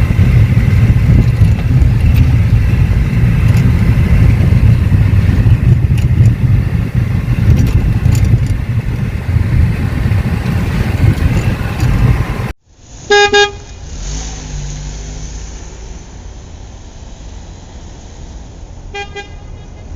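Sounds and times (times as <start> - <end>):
road traffic rumble: 0.0 - 19.9
car horn toots: 13.1 - 13.8, 18.9 - 19.9.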